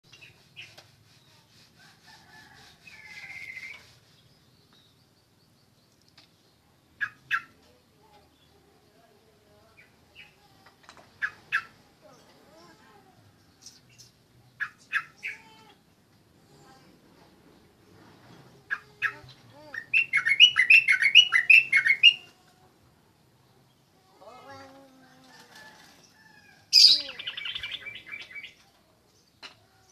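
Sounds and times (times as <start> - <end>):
bird sharp calls: 18.7 - 22.3
bulbul singing: 19.0 - 22.3, 26.7 - 28.6
bulbul warbling song: 19.8 - 22.3.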